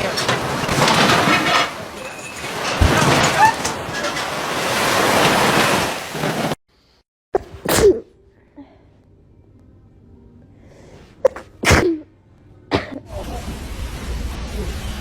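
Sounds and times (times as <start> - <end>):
wind and surf rushing: 2.8 - 6.6.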